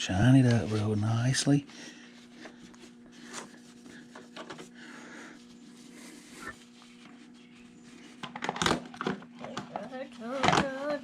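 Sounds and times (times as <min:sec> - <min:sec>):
steady hum: 0:00.0 - 0:11.0.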